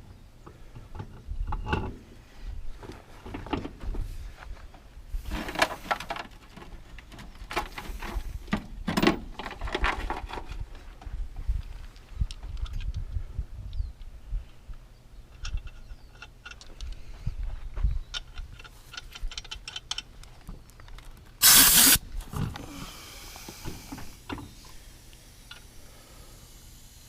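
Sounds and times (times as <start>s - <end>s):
faint hiss: 21.4s - 22.0s, 22.6s - 27.0s
loud hissing burst: 21.4s - 22.0s, 22.7s - 27.0s.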